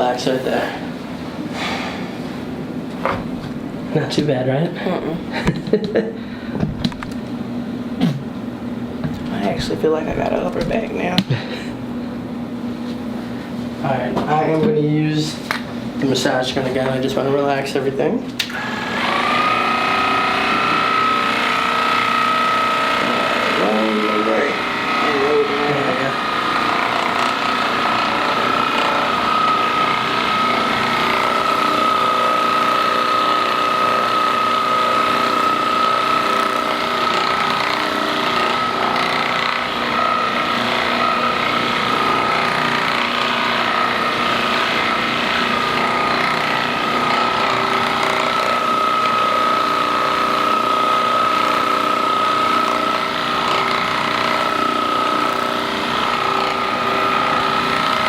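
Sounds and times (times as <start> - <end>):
massage gun motor whine: 9.0 - 14.6, 18.4 - 58.0.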